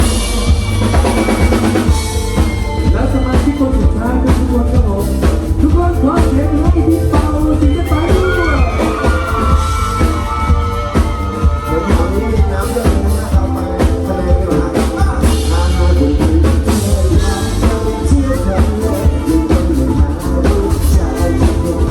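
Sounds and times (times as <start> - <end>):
drum kit: 0.0 - 21.9
live band playing pop song: 0.0 - 21.9.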